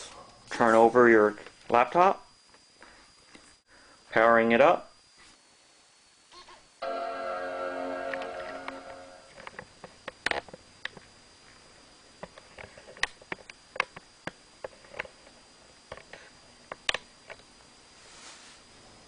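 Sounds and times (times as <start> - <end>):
faint high whine: 0.0 - 13.8.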